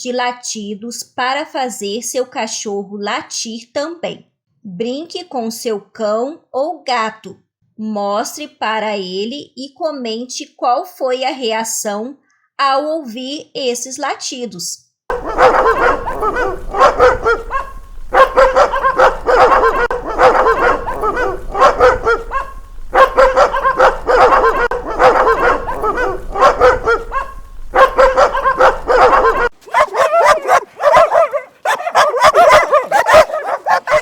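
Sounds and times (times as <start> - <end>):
background hum: 15.1 - 34.0
dogs barking angrily: 15.1 - 34.0.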